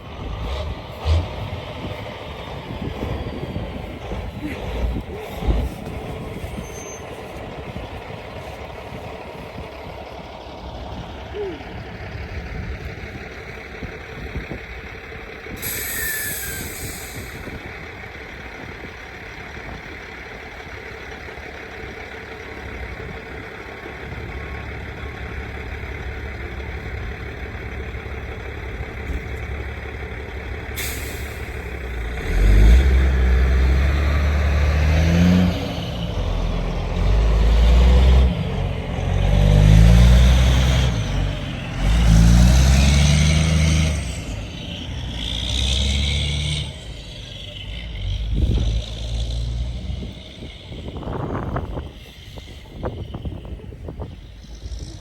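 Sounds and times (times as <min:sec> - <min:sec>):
heavy vehicle engine revving: 0:00.0 - 0:55.0
air hissing: 0:15.6 - 0:17.4.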